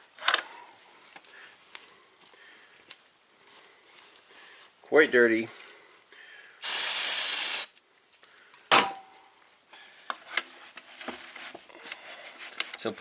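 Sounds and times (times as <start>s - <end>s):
aerosol spray hiss: 6.6s - 7.8s.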